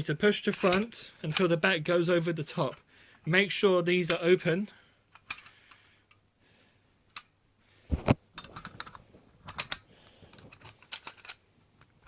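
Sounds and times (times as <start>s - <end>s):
pistol slide clicking and clattering: 0.5s - 0.9s, 8.4s - 9.9s, 10.5s - 11.4s.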